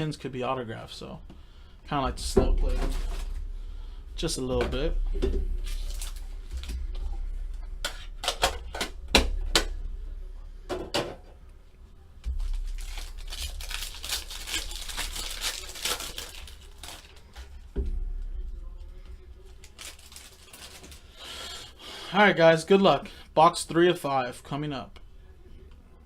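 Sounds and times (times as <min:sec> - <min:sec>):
wrapping crinkling and tearing: 0:05.6 - 0:06.7, 0:12.3 - 0:17.6, 0:19.4 - 0:21.6.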